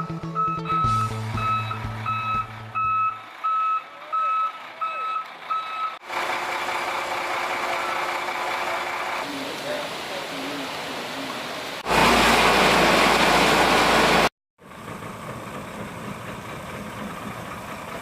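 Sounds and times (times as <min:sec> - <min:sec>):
reversing alarm beeping: 0:00.2 - 0:06.0, 0:07.7 - 0:08.1.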